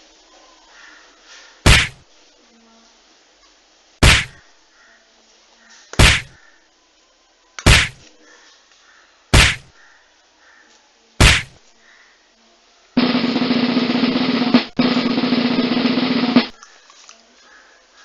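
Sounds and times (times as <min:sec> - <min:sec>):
hand slapping a dog: 0:01.7 - 0:02.0, 0:07.6 - 0:08.0, 0:09.4 - 0:09.7
loud continuous rattling: 0:13.0 - 0:16.6.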